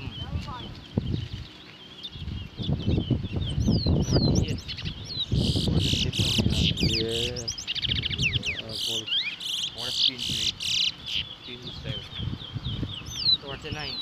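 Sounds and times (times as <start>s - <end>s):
finches singing: 0.0s - 14.0s.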